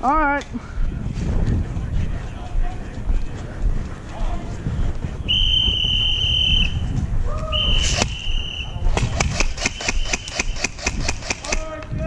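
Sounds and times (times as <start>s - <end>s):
airsoft guns firing: 8.9s - 11.8s.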